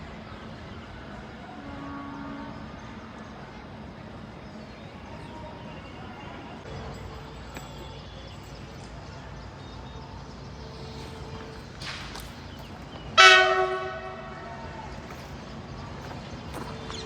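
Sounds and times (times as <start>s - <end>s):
train horn blast: 1.4s - 3.3s, 13.1s - 15.0s.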